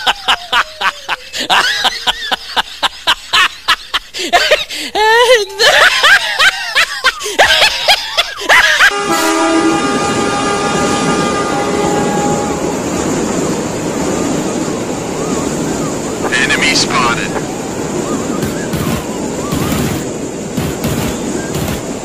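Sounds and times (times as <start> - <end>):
train rumble: 8.5 - 22.0
train horn chord: 8.9 - 13.2.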